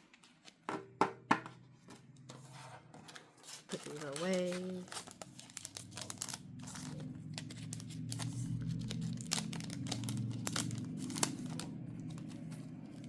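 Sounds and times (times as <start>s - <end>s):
packaging crinkling and rustling: 1.8s - 13.0s
low steady hum: 3.8s - 13.0s.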